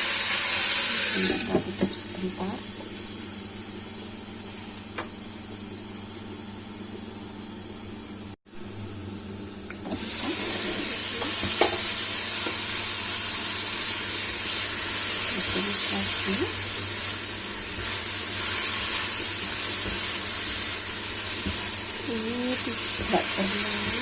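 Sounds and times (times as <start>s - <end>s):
vegetables sizzling in a pan: 0.0s - 4.8s, 9.8s - 24.0s.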